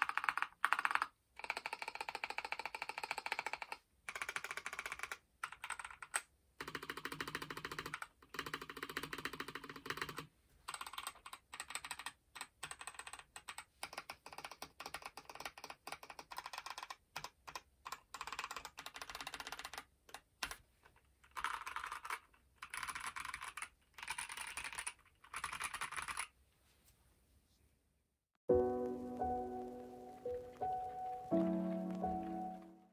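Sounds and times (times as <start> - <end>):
typing on mechanical keyboard: 0.0 - 26.3.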